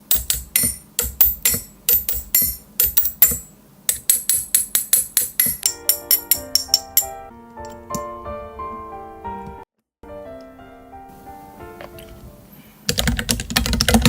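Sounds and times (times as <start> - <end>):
pitched musical notes: 5.4 - 8.9
mechanical keyboard keystrokes: 12.9 - 14.0.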